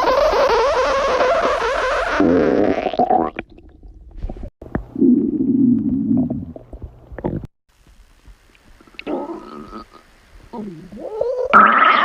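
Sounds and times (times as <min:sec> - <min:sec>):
stomach growling: 0:02.2 - 0:07.5, 0:08.6 - 0:12.0.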